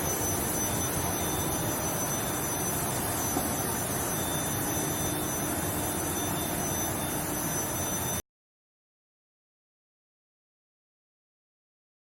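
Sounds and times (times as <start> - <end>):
steady industrial din: 0.0 - 8.1
thin high-pitched whine: 0.0 - 8.2.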